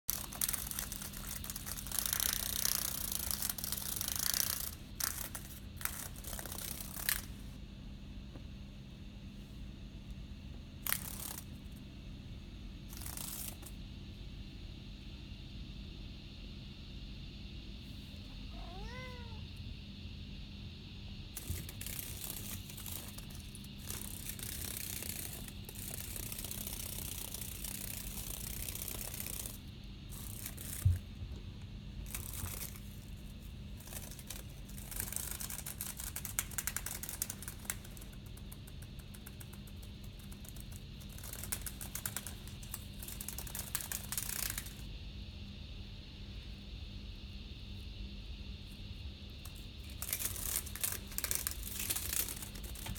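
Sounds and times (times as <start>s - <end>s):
cicada buzzing: 0.1s - 7.3s
cat meowing: 18.4s - 19.5s.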